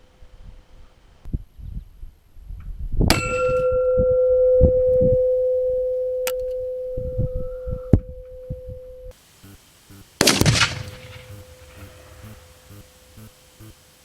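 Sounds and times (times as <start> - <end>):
metallic strike ringing steel: 3.1 - 7.0
low thumps: 9.9 - 13.8.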